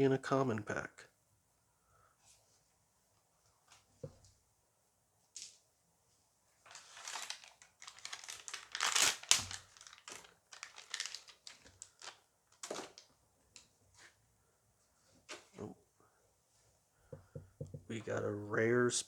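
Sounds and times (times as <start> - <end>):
foil pack crinkling and tearing: 6.7 - 13.1.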